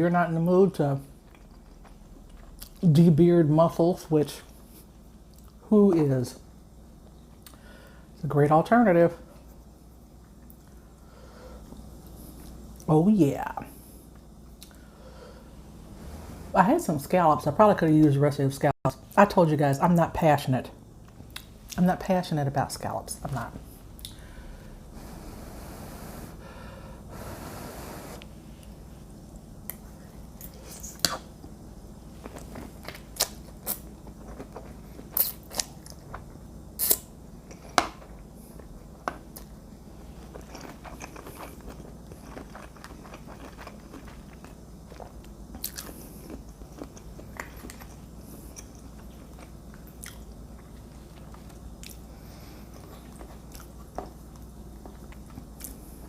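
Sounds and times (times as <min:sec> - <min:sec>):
person chewing food: 0:01.2 - 0:02.8, 0:32.2 - 0:56.0.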